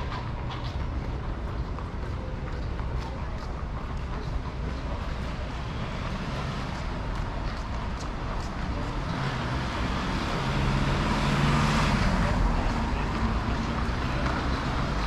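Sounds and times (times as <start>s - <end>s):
rumble of passing vehicles: 0.0s - 15.0s
approaching vehicle engine: 4.1s - 15.0s.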